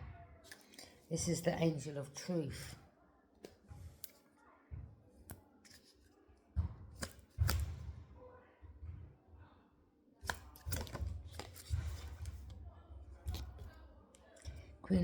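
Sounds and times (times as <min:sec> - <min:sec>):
cards snapping and tapping: 0:05.2 - 0:06.0, 0:07.0 - 0:07.8, 0:10.2 - 0:12.5, 0:13.2 - 0:13.7.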